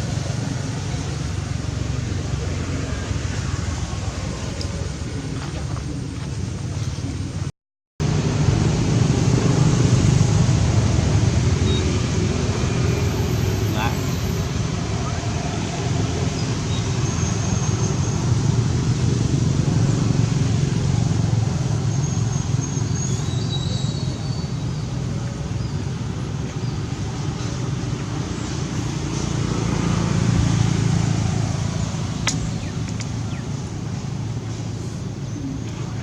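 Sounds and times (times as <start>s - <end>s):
low rumbling background noise: 0.0s - 36.0s
sharp click: 32.2s - 33.2s.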